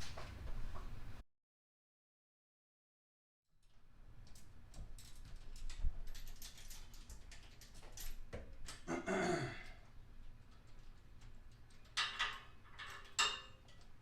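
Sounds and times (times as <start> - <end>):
hand tools clicking and rattling: 4.3 - 8.8, 10.4 - 14.0.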